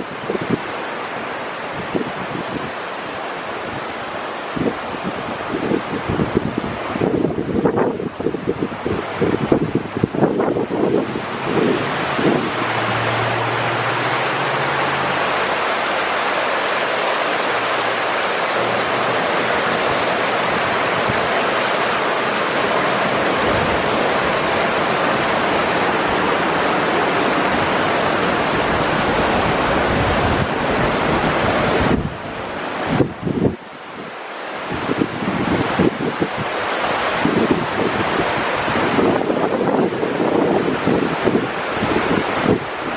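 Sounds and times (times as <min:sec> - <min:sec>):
heavy rain pouring: 0:00.0 - 0:42.9
wind: 0:00.0 - 0:42.9.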